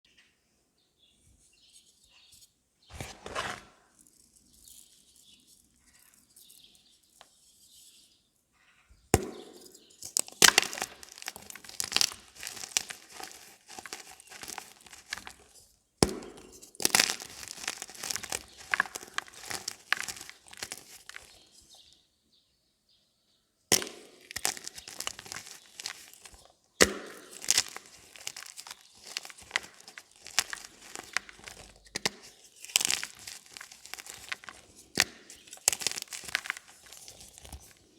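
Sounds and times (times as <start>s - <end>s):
chalk crunching and crackling: 1.5s - 8.3s, 9.2s - 22.0s, 23.7s - 37.9s.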